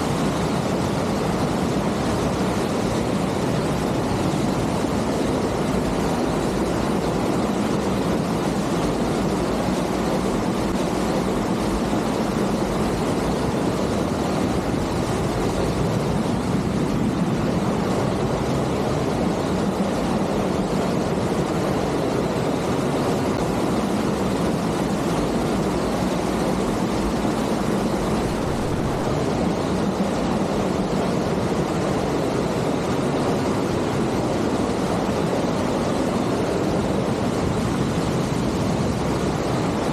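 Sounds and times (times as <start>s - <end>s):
waterfall rushing: 23.6s - 29.8s.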